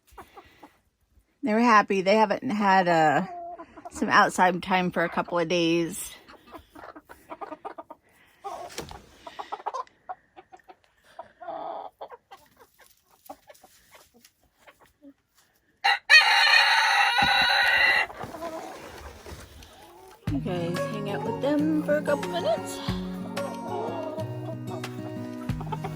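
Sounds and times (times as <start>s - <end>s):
chickens clucking: 0.0s - 1.2s, 2.6s - 25.9s
rooster crowing: 15.8s - 18.1s.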